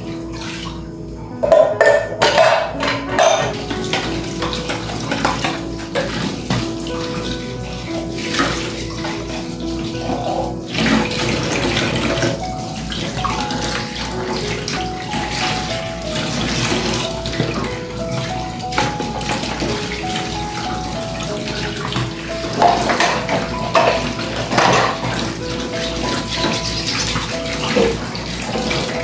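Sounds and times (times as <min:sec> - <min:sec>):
soft background music: 0:00.0 - 0:29.0
water running from a tap: 0:00.0 - 0:29.0.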